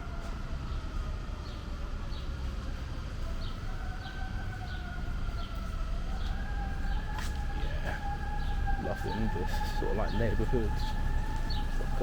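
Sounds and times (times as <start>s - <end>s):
emergency siren wailing: 0.0s - 1.8s, 3.1s - 12.0s
low street rumble: 0.0s - 12.0s
bird chirping: 3.3s - 12.0s.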